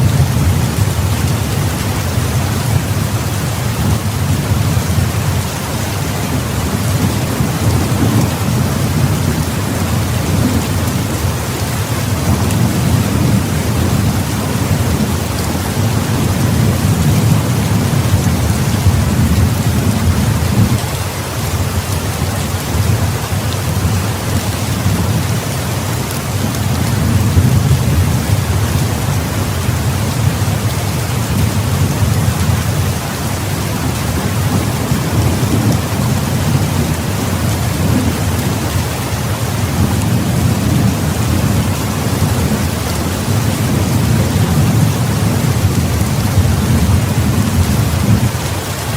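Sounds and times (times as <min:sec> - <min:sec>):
heavy rain pouring: 0:00.0 - 0:48.9
thunder rumbling: 0:00.0 - 0:48.9.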